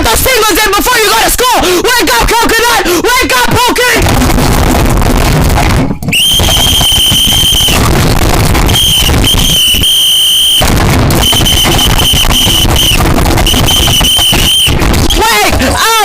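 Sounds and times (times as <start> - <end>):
harsh crackling noise: 3.3 - 16.0.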